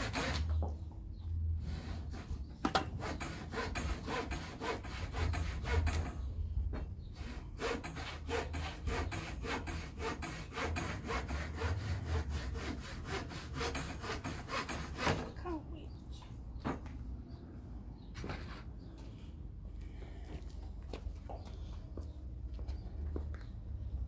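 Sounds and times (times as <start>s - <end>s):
hand saw cutting timber: 0.0s - 0.7s, 1.6s - 6.2s, 7.2s - 15.4s.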